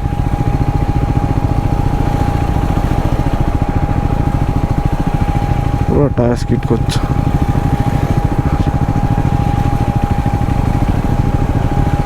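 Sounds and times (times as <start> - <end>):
motorcycle engine idling: 0.0 - 12.0
thin whine: 4.2 - 12.0.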